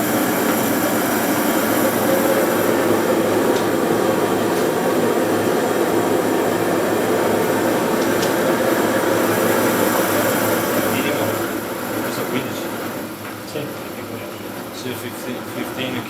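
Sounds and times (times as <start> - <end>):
heater blower rushing air: 0.0 - 16.0.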